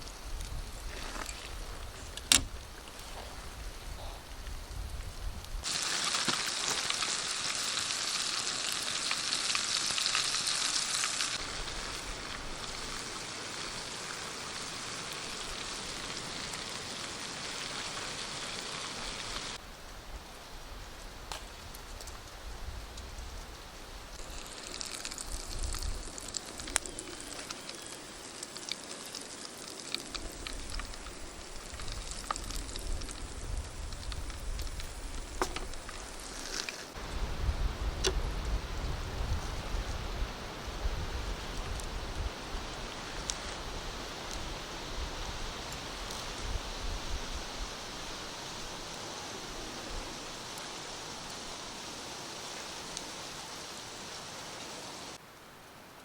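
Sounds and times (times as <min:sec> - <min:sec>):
oil pops and crackles: 0:04.9 - 0:11.6, 0:24.2 - 0:37.0
hot oil sizzling: 0:05.4 - 0:19.6, 0:24.2 - 0:37.5.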